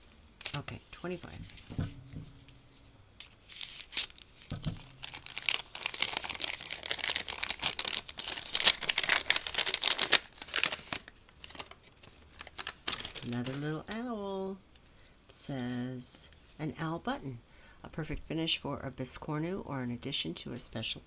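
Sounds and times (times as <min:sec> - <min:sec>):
packet wrapping crinkling: 0:00.4 - 0:00.7, 0:03.4 - 0:13.6
short low knock: 0:01.3 - 0:03.4, 0:04.5 - 0:05.0.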